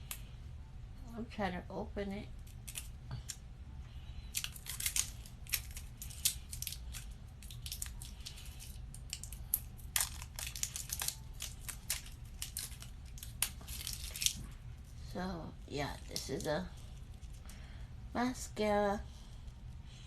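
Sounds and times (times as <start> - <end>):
packaging crackling and tearing: 2.4 - 3.4, 4.3 - 14.9.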